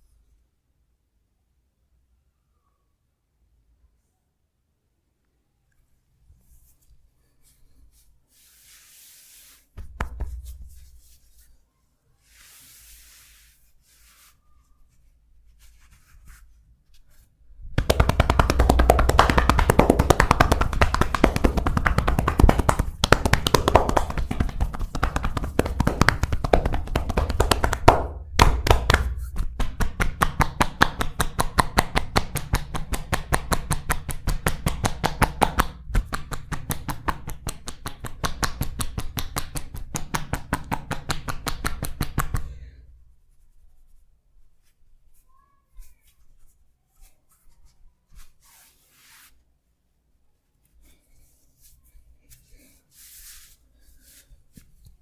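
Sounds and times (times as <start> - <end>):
fast hand strikes with thuds: 9.8 - 10.8, 17.7 - 42.6
fast sharp taps: 17.7 - 42.5.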